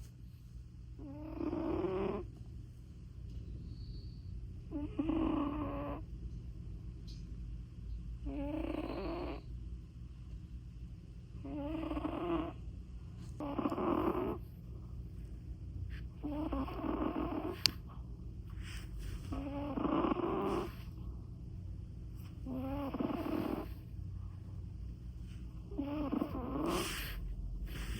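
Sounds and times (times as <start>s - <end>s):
cat snoring: 1.0s - 2.3s, 4.7s - 6.1s, 8.2s - 9.5s, 11.4s - 12.6s, 13.4s - 14.6s, 15.9s - 17.8s, 18.5s - 21.0s, 22.4s - 23.9s, 25.7s - 27.9s.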